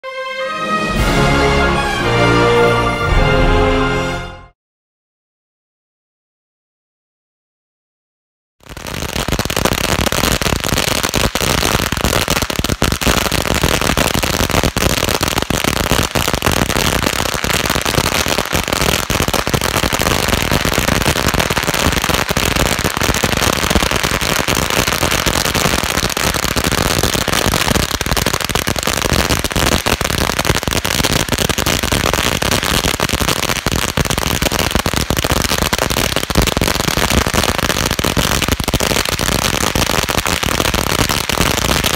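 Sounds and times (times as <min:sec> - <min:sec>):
firecrackers going off: 0:08.6 - 0:41.9.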